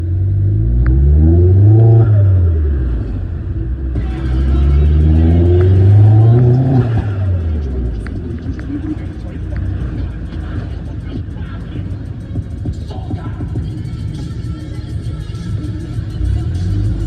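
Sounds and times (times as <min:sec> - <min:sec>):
turbocharged car engine revving: 0:00.0 - 0:17.0.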